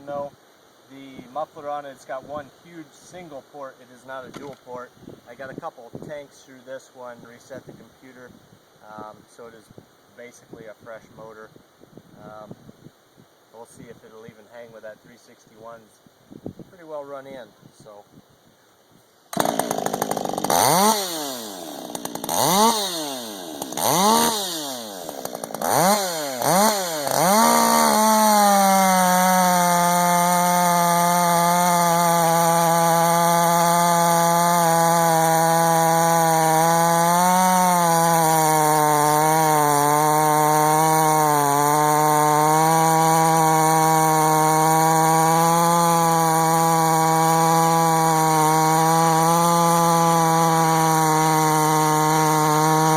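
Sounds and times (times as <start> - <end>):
chainsaw cutting wood: 19.3 - 52.9
chainsaw revving: 19.3 - 52.9.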